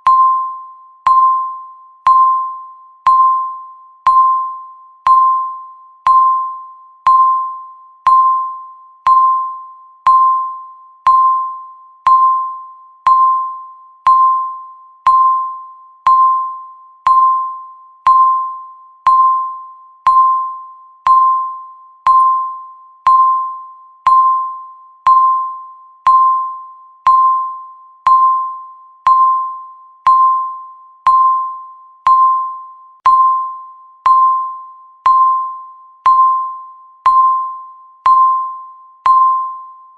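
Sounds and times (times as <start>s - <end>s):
countdown timer beeping: 0.0s - 39.9s.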